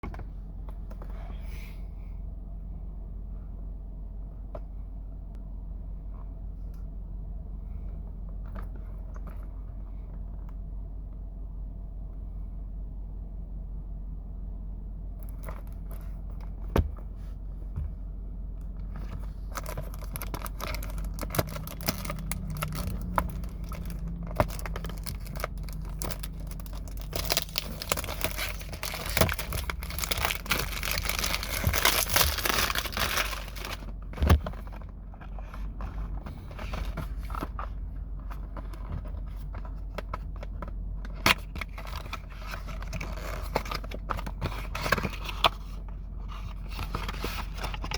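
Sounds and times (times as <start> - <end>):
packaging torn and crinkled: 19.5 - 33.9.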